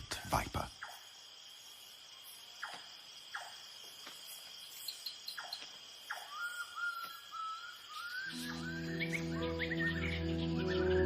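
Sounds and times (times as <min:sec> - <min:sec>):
cricket trill: 0:00.0 - 0:11.0
downward-sweeping calls: 0:04.7 - 0:11.0
wavering whistled note: 0:08.2 - 0:11.0.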